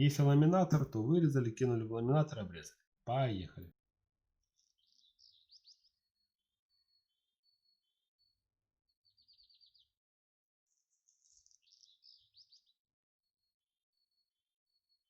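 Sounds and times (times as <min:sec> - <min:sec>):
bird chirping and trilling: 0:04.6 - 0:08.4, 0:09.0 - 0:10.0, 0:11.1 - 0:12.8.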